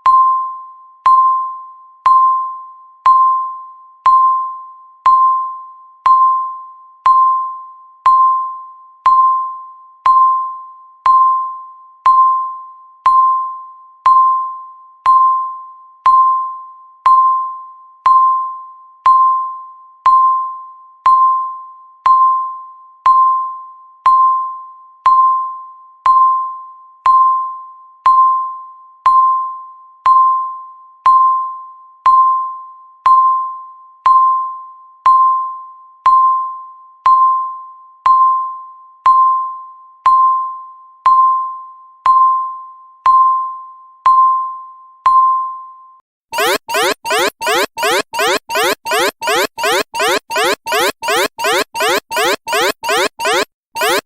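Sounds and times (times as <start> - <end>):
bell-like timer beeps: 46.4 - 54.0.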